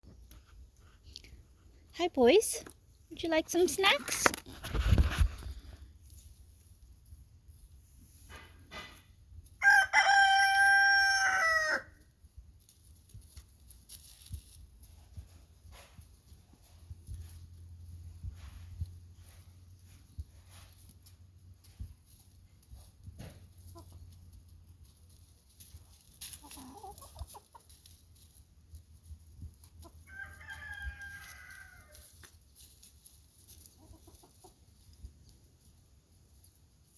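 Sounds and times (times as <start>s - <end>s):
rooster crowing: 9.6s - 11.9s, 30.1s - 32.0s
roosters clucking: 15.9s - 36.9s
faint chicken clucks: 26.4s - 27.8s, 33.6s - 35.1s.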